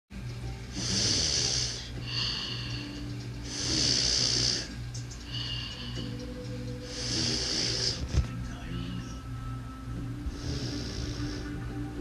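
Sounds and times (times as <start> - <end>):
person snoring: 0.7 - 6.2, 6.8 - 8.2, 10.3 - 11.7.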